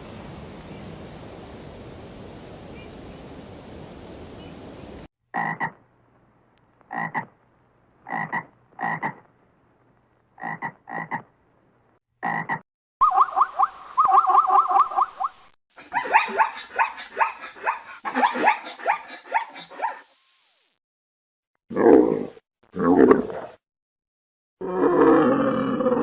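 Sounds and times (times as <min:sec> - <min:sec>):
background hiss: 0:00.0 - 0:05.0, 0:15.8 - 0:20.8
warbling animal call: 0:12.2 - 0:20.0.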